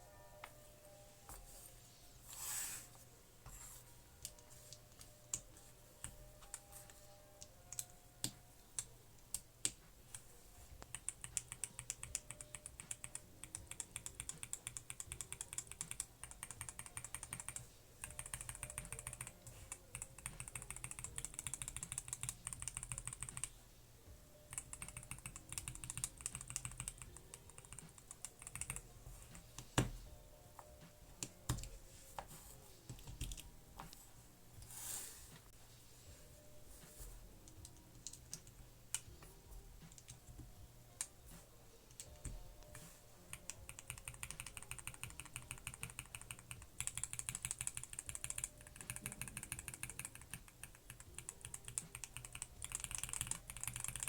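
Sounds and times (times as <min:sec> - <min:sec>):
typing on mechanical keyboard: 0:10.8 - 0:23.5, 0:24.5 - 0:28.9, 0:41.9 - 0:54.0.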